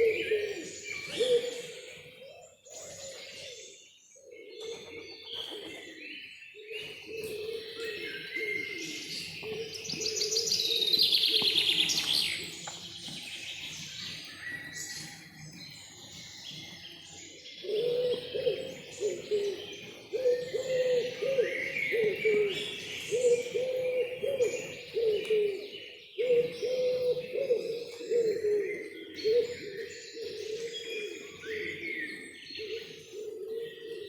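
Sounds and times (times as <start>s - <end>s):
birds chirping and whistling: 0.0s - 34.0s.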